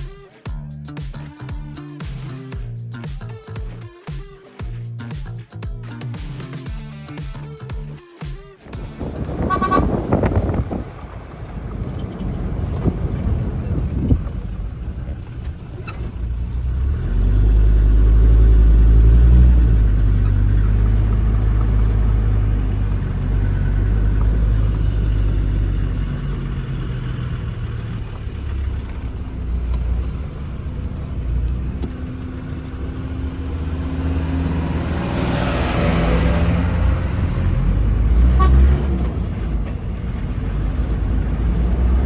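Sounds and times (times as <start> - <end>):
road and wind noise: 8.6 - 42.0
car engine running: 8.7 - 42.0.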